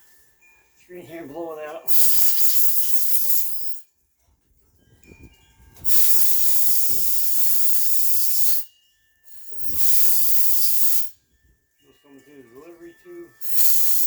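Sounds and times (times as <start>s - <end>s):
compressed air blowgun hissing: 1.9s - 3.8s, 5.8s - 8.7s, 9.3s - 11.2s, 13.4s - 14.0s.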